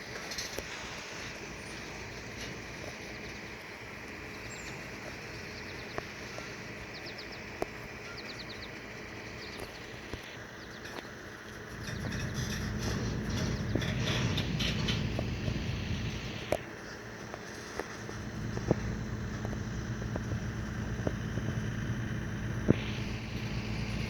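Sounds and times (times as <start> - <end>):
bird singing trills: 4.2 - 16.5.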